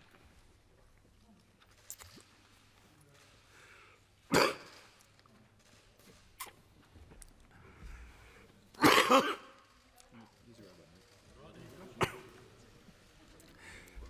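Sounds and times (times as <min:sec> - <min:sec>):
man coughing: 0:04.3 - 0:04.8, 0:08.8 - 0:09.5, 0:12.0 - 0:12.4.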